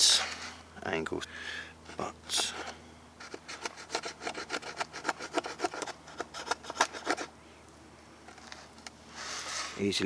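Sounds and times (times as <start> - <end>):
axe blade scraping wood: 3.2 - 7.3, 8.4 - 9.8.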